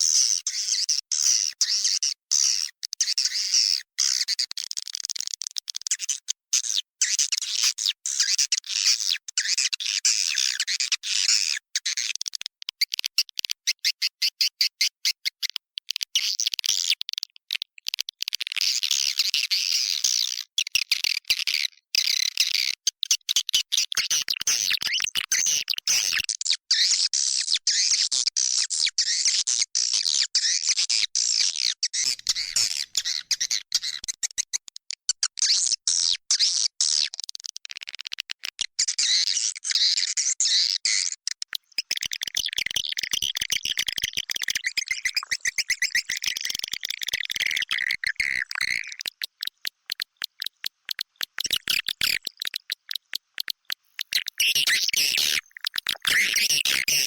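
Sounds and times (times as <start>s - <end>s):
swiftlets twittering: 44.7s - 57.0s.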